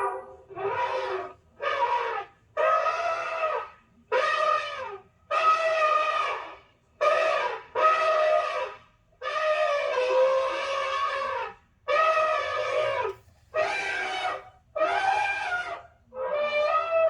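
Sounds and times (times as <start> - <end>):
horn-like trumpeting calls: 9.2 - 15.4.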